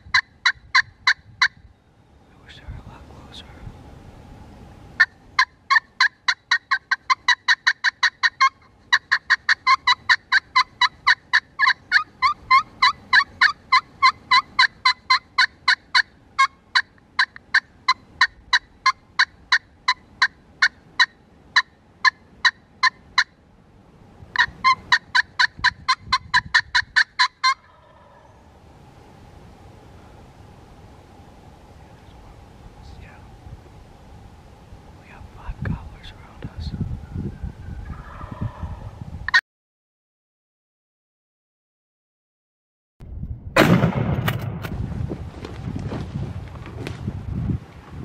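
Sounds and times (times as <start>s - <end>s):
turkey yelps: 5.0s - 23.3s, 24.4s - 28.4s, 37.2s - 39.4s.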